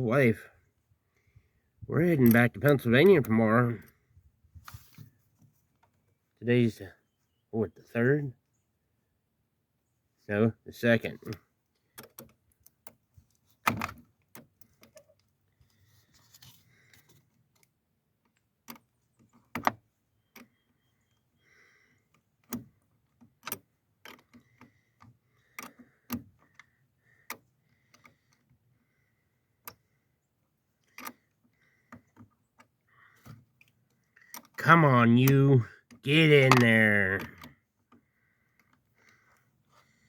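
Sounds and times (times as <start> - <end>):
metallic clicks of hand tools: 2.2 - 3.4, 30.8 - 31.2.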